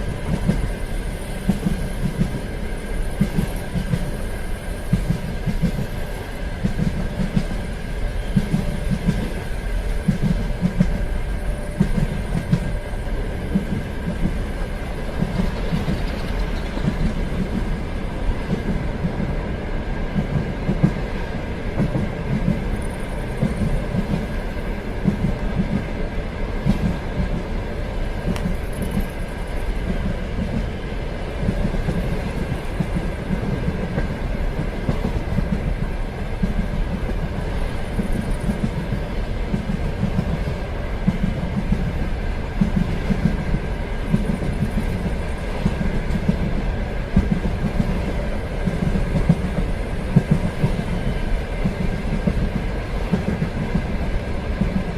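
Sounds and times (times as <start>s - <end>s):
train rumble: 0.0s - 54.9s
train wheels clattering over rail joints: 4.8s - 19.3s.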